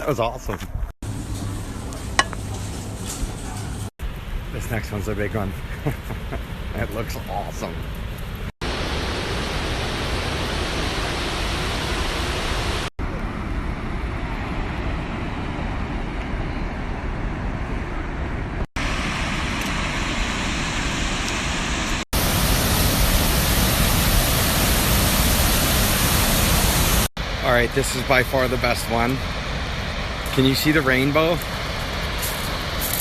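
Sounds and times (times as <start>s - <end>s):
geyser rushing hiss: 18.8s - 33.0s.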